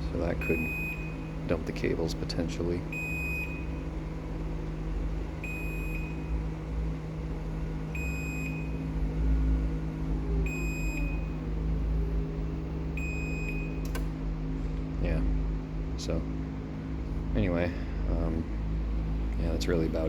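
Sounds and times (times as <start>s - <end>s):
motor whine falling in pitch: 0.0s - 15.2s
garage door opener motor hum: 0.0s - 20.0s.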